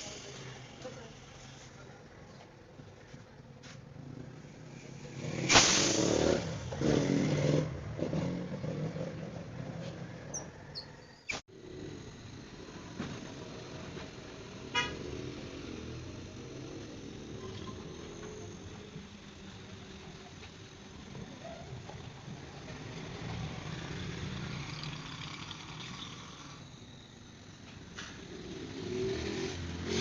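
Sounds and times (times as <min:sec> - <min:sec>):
brief rapid rattle: 0:05.4 - 0:06.7
vehicle horn honking: 0:14.7 - 0:15.1.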